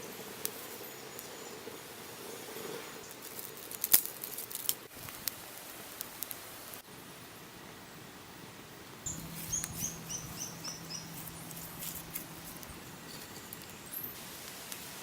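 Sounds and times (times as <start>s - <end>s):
steady outdoor hiss: 0.0s - 15.0s
bird chirping: 9.1s - 14.2s.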